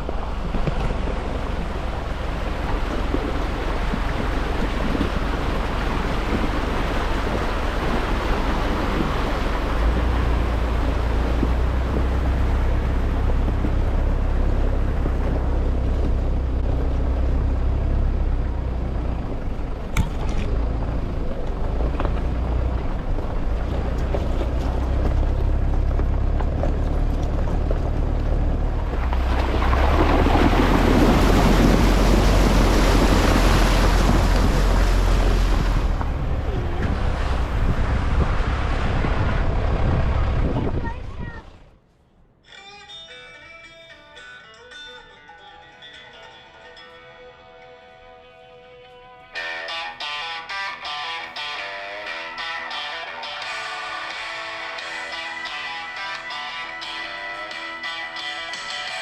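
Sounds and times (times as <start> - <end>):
vehicle low rumble: 0.0 - 42.4
rushing wind-like noise: 27.7 - 41.6.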